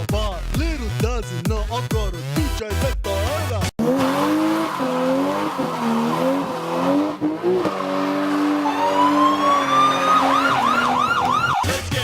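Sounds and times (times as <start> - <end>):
car tyres squealing: 3.8 - 11.7
car engine revving: 3.8 - 11.9
siren wailing and whooping: 4.2 - 11.8.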